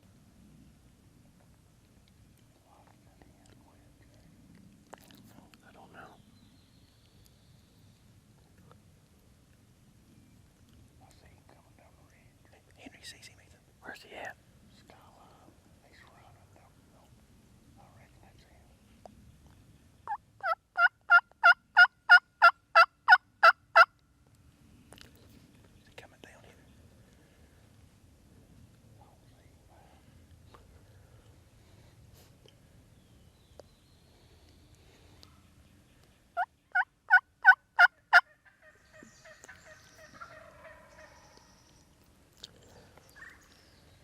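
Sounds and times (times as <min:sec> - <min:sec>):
turkey yelping: 0:20.1 - 0:23.9, 0:36.4 - 0:41.2.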